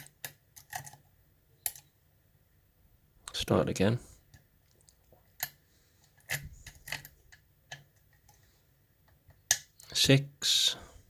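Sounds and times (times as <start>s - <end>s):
lock pick clicking in lock: 6.2s - 7.9s.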